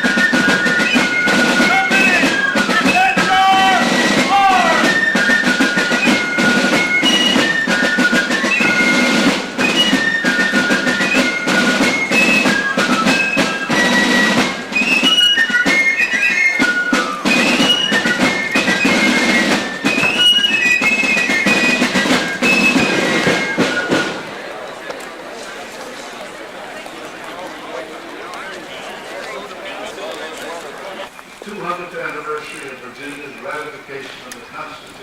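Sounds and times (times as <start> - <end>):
high-pitched fife melody: 0.0 - 23.8
continuous drumming: 0.0 - 24.5.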